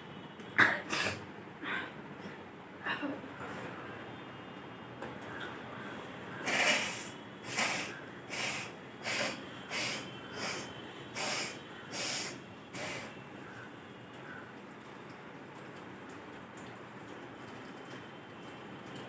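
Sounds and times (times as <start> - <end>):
person blowing air through nose: 6.4 - 13.1.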